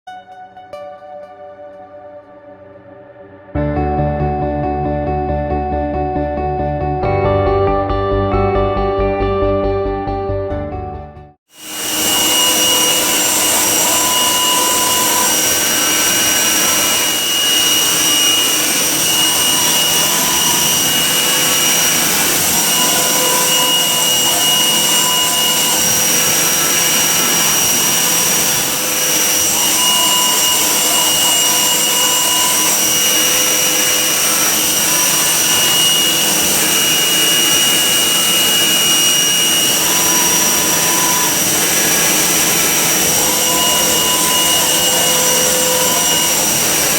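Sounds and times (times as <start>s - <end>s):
machining centre high whine: 11.5s - 46.9s
lower machine tone: 11.6s - 46.9s.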